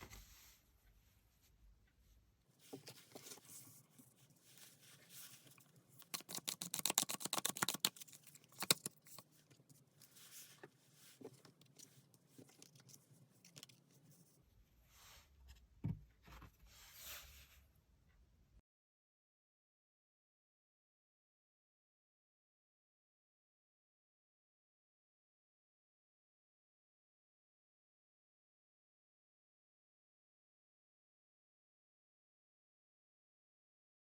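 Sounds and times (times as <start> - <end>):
cards rustling and shuffling: 2.6 - 14.3
rapid card clicks: 6.0 - 9.1.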